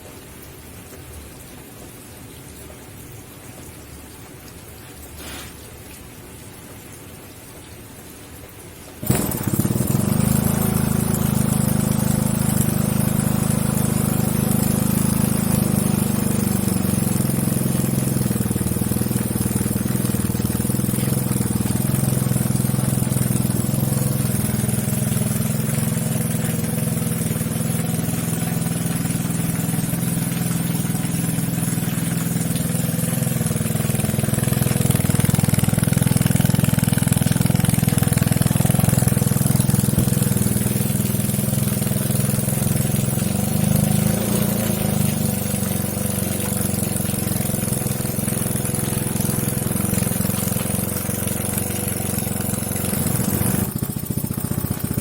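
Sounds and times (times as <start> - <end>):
small engine running: 9.0 - 55.0.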